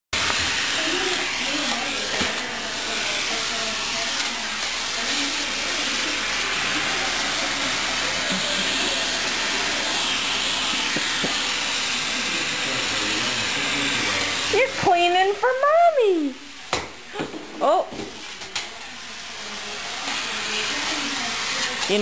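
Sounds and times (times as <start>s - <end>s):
handheld vacuum cleaner running: 0.2s - 22.0s.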